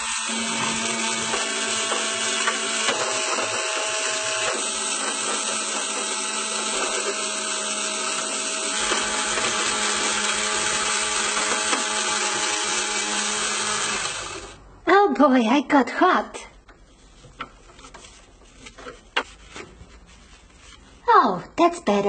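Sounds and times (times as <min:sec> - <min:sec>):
small electric motor whirring: 0:00.0 - 0:14.6.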